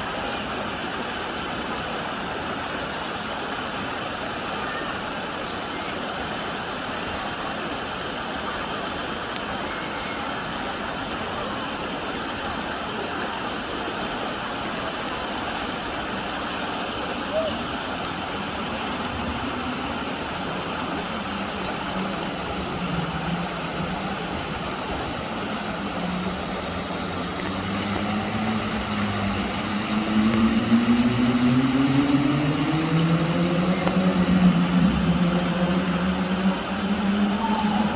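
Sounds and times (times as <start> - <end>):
road traffic noise: 0.0 - 37.9
vehicle engine passing close: 16.8 - 37.9.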